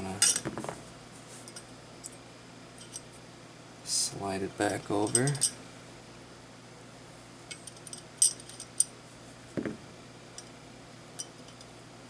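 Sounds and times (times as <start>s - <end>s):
dull knock: 0.4s - 0.8s, 9.6s - 9.9s.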